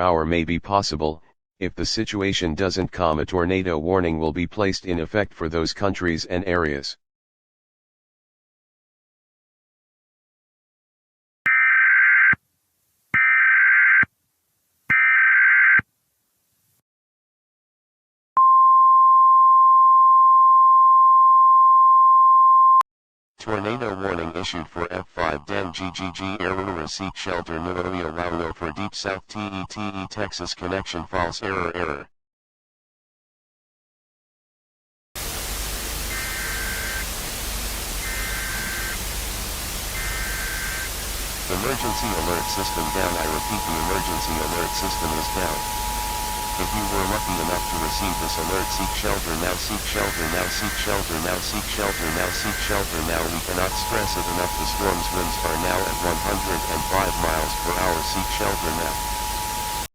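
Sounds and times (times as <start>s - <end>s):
two-tone electronic beep: 18.4s - 22.8s, 41.5s - 51.4s, 52.1s - 59.9s
buzzy data bursts: 35.2s - 59.9s
static hiss: 35.2s - 59.9s.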